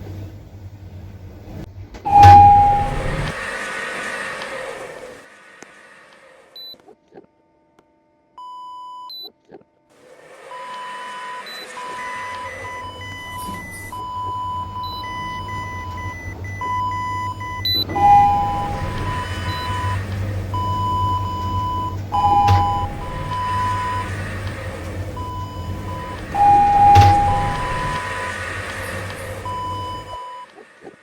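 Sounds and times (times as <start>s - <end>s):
electronic beeps: 2.1s - 3.4s, 10.8s - 24.3s, 25.2s - 30.5s.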